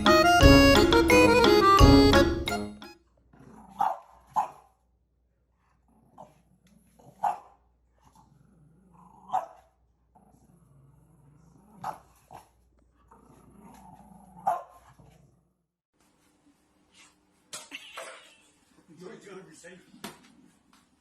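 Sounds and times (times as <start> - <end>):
dog growling low: 3.3 - 3.8, 5.6 - 7.2, 8.0 - 9.4, 10.1 - 15.7
dog barking: 3.6 - 4.8, 7.1 - 7.6, 9.3 - 9.7, 11.8 - 12.4, 14.4 - 14.9.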